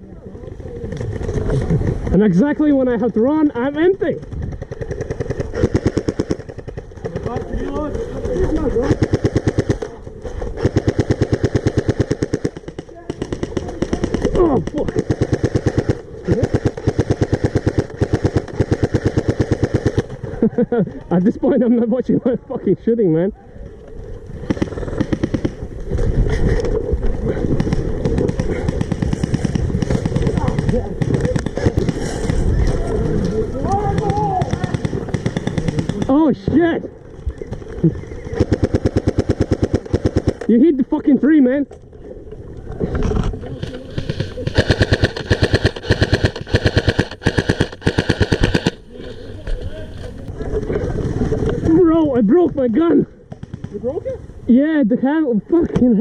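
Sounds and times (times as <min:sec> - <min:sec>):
airsoft guns firing: 0:04.1 - 0:10.0, 0:10.6 - 0:20.3, 0:24.4 - 0:25.7, 0:27.3 - 0:32.8, 0:33.6 - 0:36.6, 0:37.4 - 0:40.7, 0:43.6 - 0:48.9.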